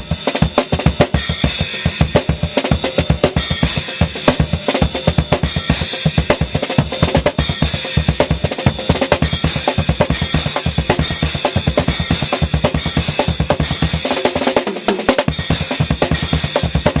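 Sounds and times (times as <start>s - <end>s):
drum kit played fast: 0.0s - 17.0s.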